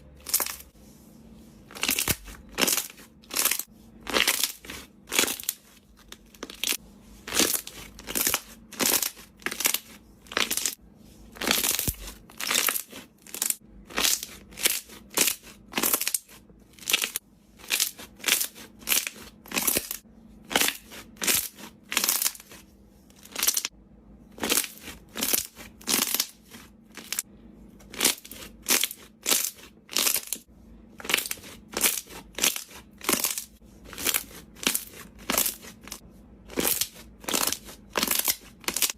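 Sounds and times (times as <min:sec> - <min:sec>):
slime squishing and popping: 0:01.8 - 0:10.8, 0:11.4 - 0:22.5, 0:24.4 - 0:27.2, 0:31.0 - 0:38.9.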